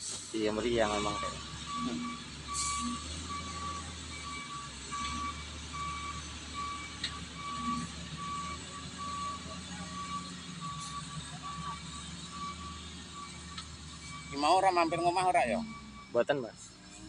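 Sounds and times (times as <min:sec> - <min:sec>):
diesel engine running: 0:00.0 - 0:17.0
reversing alarm beeping: 0:00.4 - 0:17.0.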